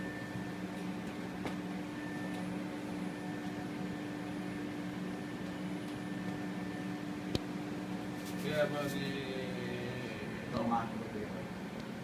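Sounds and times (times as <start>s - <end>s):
electrical hum: 0.0s - 12.0s
fan-like hiss: 7.2s - 12.0s.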